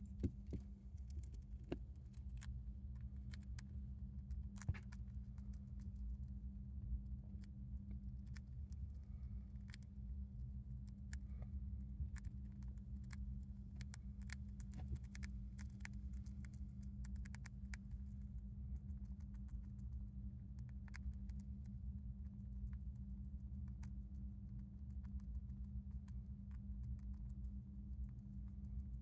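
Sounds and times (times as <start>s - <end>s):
steady low hum: 0.0s - 29.0s
hamster licking clicks: 12.0s - 29.0s.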